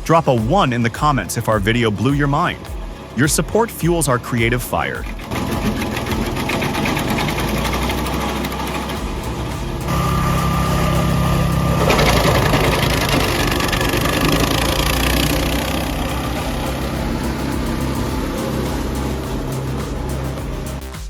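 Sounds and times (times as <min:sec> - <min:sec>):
loud rough noise: 0:00.0 - 0:21.0
machine engine running: 0:00.0 - 0:21.0.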